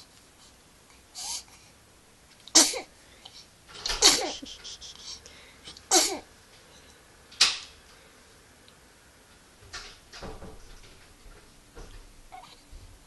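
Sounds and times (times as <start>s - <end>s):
person sneezing: 2.6s - 2.9s, 3.9s - 5.2s, 5.9s - 6.3s.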